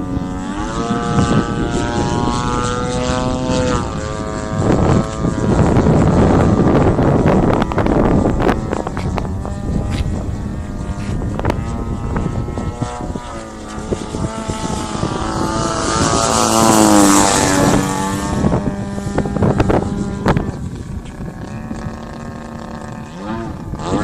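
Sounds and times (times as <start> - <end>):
model airplane motor buzzing: 0.0 - 24.0
wind rumble on microphone: 0.0 - 24.0.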